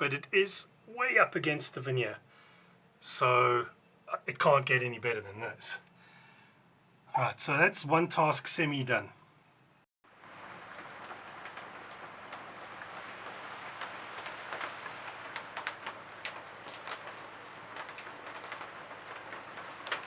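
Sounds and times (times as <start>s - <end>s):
steady rain falling: 10.0s - 20.0s
raindrops tapping: 10.1s - 20.0s.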